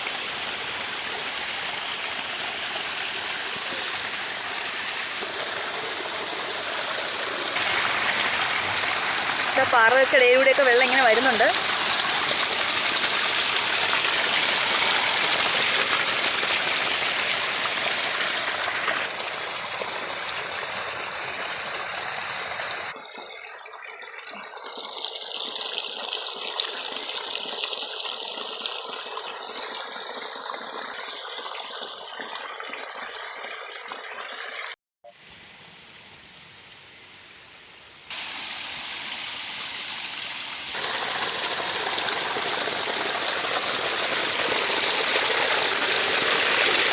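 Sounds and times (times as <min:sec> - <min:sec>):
rainwater gushing between rocks: 0:00.0 - 0:23.0, 0:40.7 - 0:46.9.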